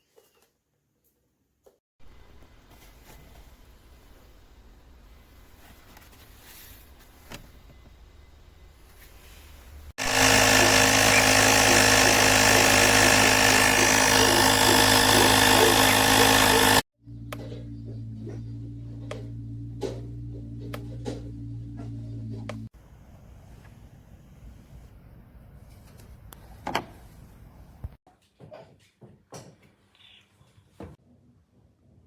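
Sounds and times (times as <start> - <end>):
air compressor buzzing: 10.0 - 16.9.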